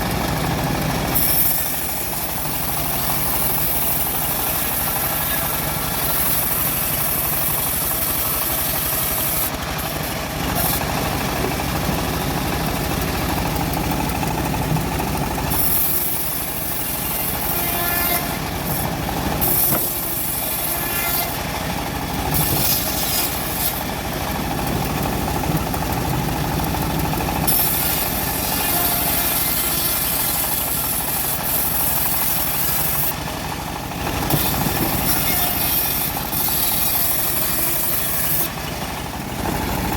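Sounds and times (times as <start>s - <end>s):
bandsaw mill engine running: 0.0s - 39.9s
saw blade hissing through wood: 1.2s - 11.0s, 15.5s - 21.7s, 22.3s - 24.1s, 27.5s - 33.2s, 34.3s - 38.8s.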